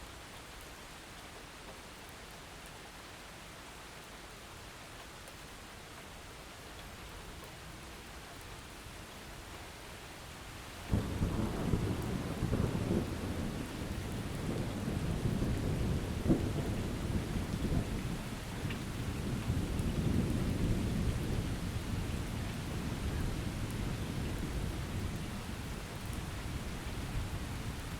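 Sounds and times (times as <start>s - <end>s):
steady rain: 0.0s - 27.9s
thunder rumbling: 10.9s - 27.9s.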